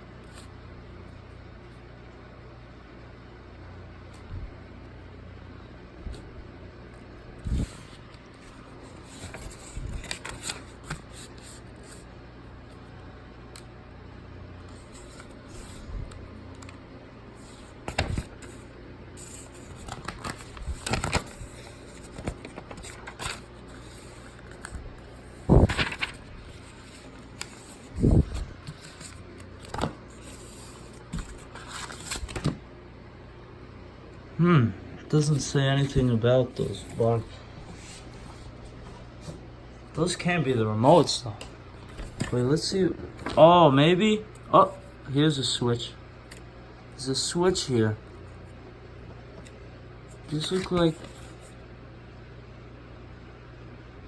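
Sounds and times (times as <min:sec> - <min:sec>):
paper rustling and scraping: 0:07.4 - 0:12.1, 0:14.7 - 0:16.2, 0:17.4 - 0:32.6, 0:35.2 - 0:39.4, 0:50.2 - 0:51.6.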